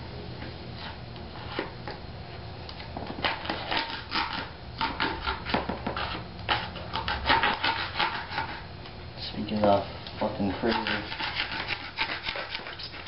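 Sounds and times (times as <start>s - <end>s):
scraping strokes cutting: 3.2s - 8.6s, 10.2s - 13.0s.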